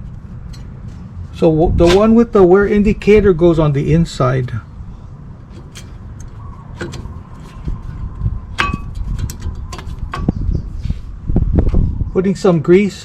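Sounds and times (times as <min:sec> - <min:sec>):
low steady rumble: 0:00.0 - 0:12.2
metallic clicks of brake pads: 0:05.4 - 0:07.8, 0:08.6 - 0:10.4.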